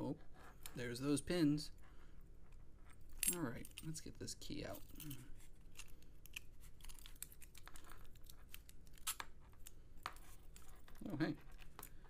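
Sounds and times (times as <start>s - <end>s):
small metal clicks and scrapes: 4.6s - 12.0s.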